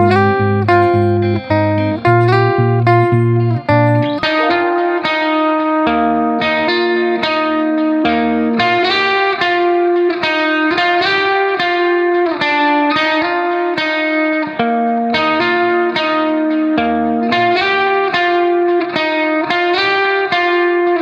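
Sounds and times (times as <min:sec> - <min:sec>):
instrumental music with ringing notes: 0:00.0 - 0:09.3.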